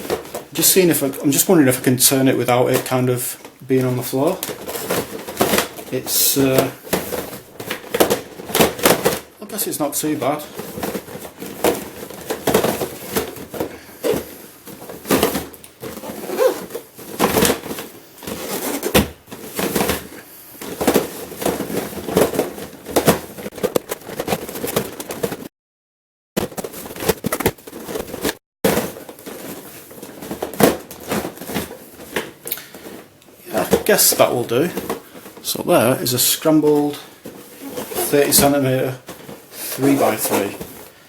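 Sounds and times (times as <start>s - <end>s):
rustling handling noise: 0.0s - 25.5s, 26.4s - 41.0s.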